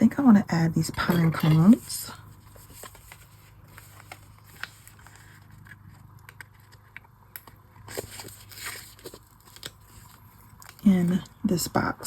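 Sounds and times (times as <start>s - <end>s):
paper rustling: 1.0s - 7.1s, 7.8s - 10.9s.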